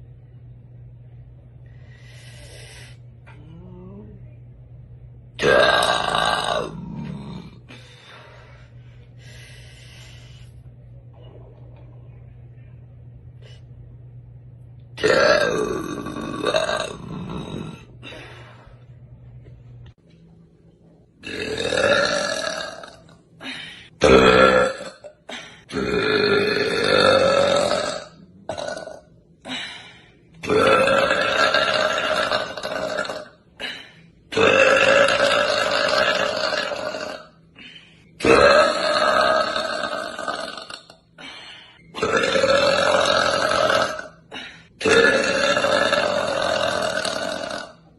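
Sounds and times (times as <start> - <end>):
breaths: 1.6 - 3.2, 7.7 - 10.7, 18.0 - 19.0, 23.4 - 24.0, 25.3 - 25.7, 29.4 - 30.4, 33.6 - 34.3, 37.4 - 38.2, 41.1 - 41.9, 44.2 - 44.8
woman burping: 5.4 - 7.6, 15.0 - 17.9, 21.2 - 23.2, 24.0 - 29.1, 30.4 - 33.7, 34.3 - 37.4, 42.0 - 47.8.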